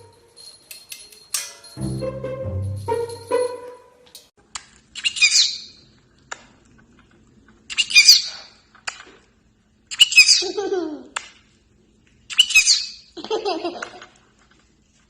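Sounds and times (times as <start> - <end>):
parrot chirp-squawks: 5.0 - 5.8, 7.7 - 8.5, 9.9 - 10.6, 12.3 - 13.0.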